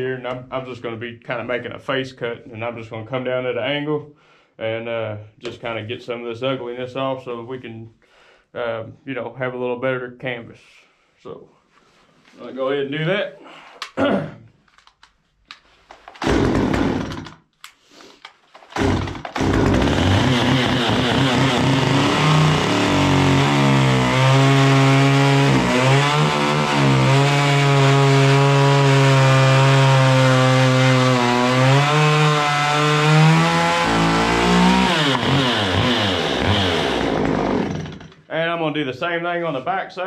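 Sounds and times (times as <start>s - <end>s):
chainsaw cutting a log: 16.2s - 17.4s, 18.7s - 38.1s.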